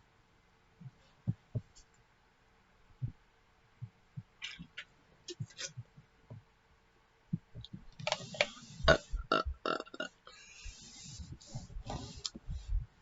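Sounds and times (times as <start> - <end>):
soft hiss: 0.0 - 9.5, 10.2 - 13.0
person burping: 8.9 - 10.2.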